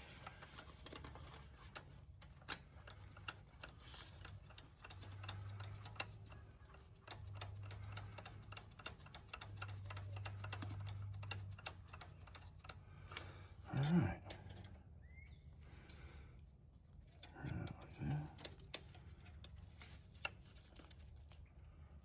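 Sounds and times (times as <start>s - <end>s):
tools clicking and tapping on engine: 0.0s - 14.8s.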